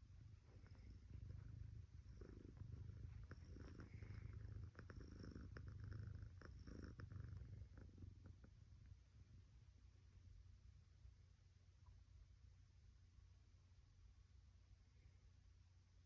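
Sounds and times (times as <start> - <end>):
cat purring: 0.0 - 9.8.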